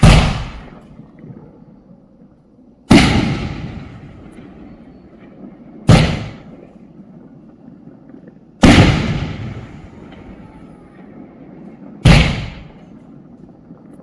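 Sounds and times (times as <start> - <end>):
fireworks booms: 0.0 - 1.2, 2.9 - 6.9, 8.6 - 13.4.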